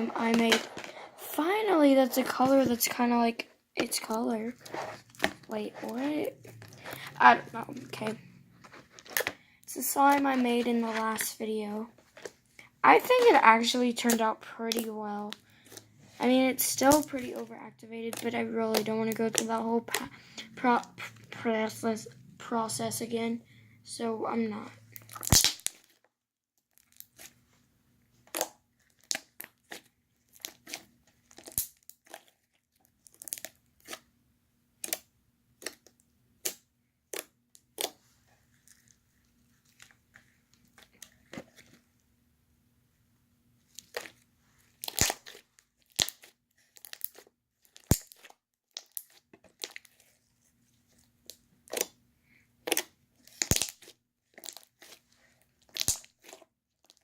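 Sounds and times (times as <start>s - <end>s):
slime crackling and popping: 25.0s - 26.0s, 28.2s - 34.0s, 34.8s - 39.0s, 43.7s - 50.2s, 51.2s - 52.0s, 52.6s - 57.0s.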